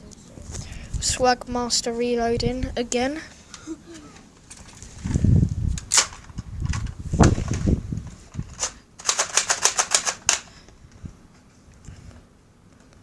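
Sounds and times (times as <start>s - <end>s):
sharp plastic blaster clicks: 8.6s - 10.5s.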